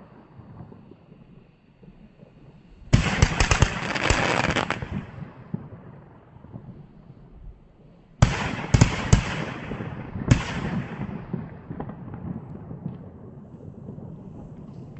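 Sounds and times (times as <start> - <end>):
firework bangs with rolling echo: 2.8 - 7.3, 8.2 - 14.9.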